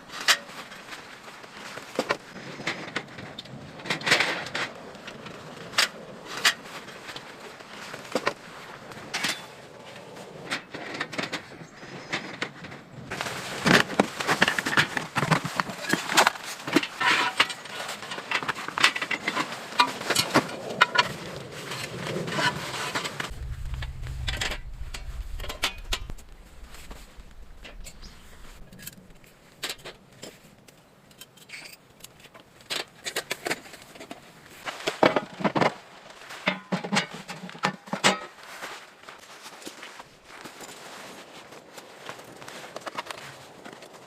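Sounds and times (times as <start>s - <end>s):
low steady hum: 23.3s - 30.0s.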